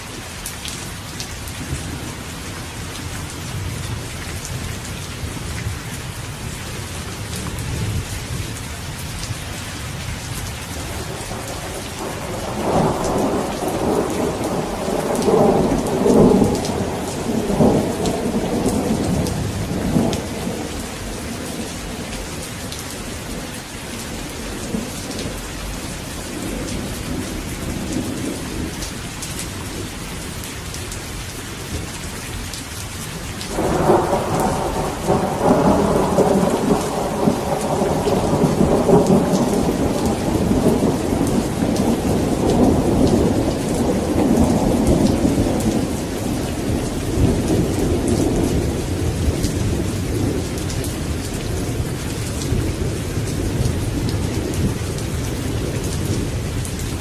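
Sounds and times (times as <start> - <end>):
steady rain falling: 0.0 - 57.0
thunder rumbling: 10.7 - 23.5, 33.4 - 57.0.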